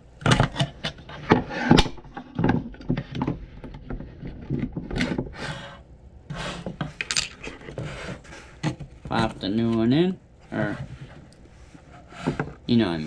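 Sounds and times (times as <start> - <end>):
lock parts clicking and scraping: 6.8 - 7.8.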